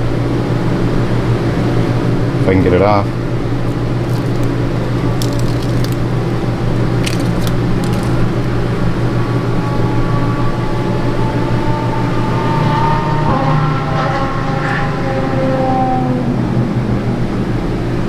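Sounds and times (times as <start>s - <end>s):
velcro backing peeling crackles: 3.7s - 9.0s.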